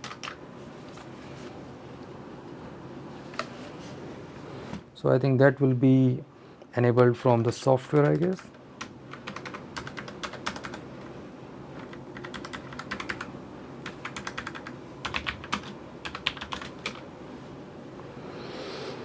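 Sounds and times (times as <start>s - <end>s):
mechanical keyboard typing: 0.0s - 0.4s, 7.4s - 10.8s, 11.8s - 17.0s.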